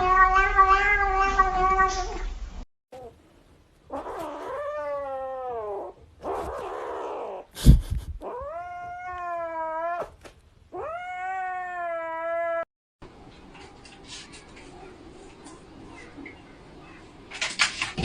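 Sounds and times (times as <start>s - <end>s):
cat meowing: 0.0s - 2.2s, 10.8s - 12.7s.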